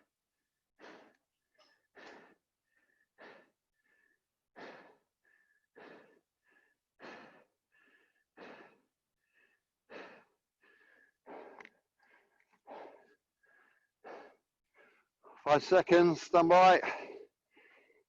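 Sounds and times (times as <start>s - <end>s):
person breathing heavily: 0.8s - 1.2s, 1.9s - 15.4s, 16.8s - 18.0s.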